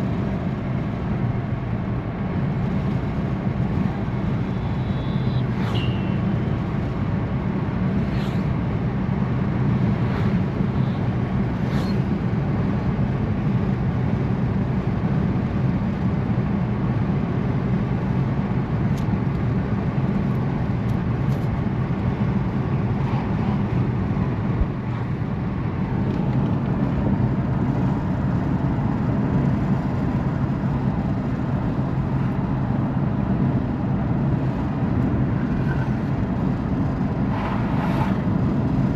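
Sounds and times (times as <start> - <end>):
car engine and road noise: 0.0 - 38.9.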